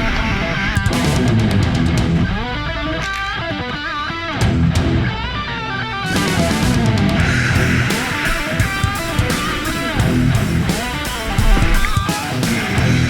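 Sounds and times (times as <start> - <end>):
bass: 0.0 - 13.0
electric guitar bending notes: 0.0 - 13.0
percussive hits: 7.4 - 12.9.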